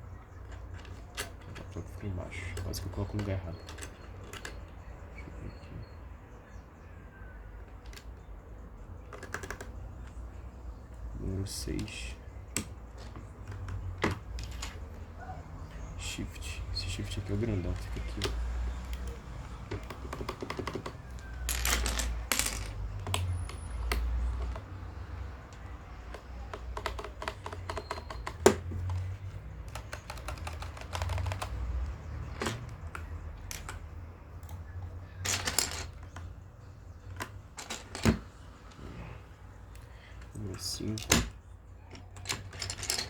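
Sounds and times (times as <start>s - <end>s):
plastic keycaps clicking: 9.0s - 10.4s, 17.3s - 21.5s, 25.5s - 34.6s.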